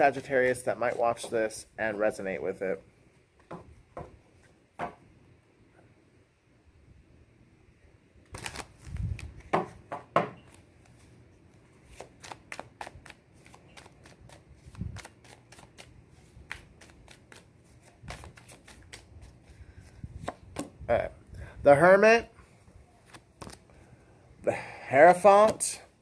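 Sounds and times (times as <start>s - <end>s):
cards being shuffled: 8.3s - 9.5s, 11.8s - 20.7s, 23.0s - 23.7s.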